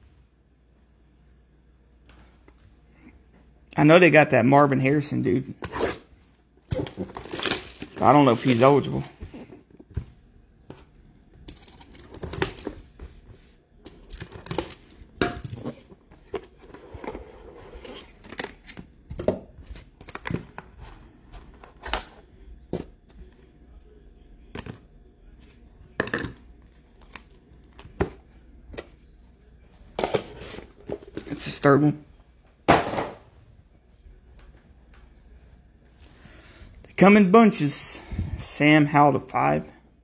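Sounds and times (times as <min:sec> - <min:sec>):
foil wrappers tearing and crinkling: 0:06.8 - 0:09.2
cards rustling and clicking: 0:06.9 - 0:09.2.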